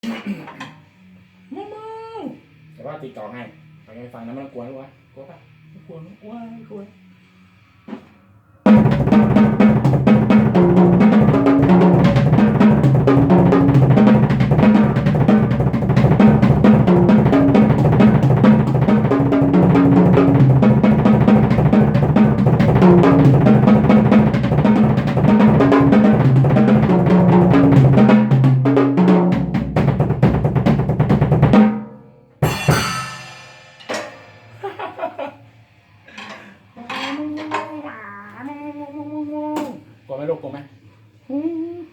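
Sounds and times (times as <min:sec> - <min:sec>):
fast drum kit playing: 0:08.7 - 0:34.8
loud drum hit: 0:08.7 - 0:34.8.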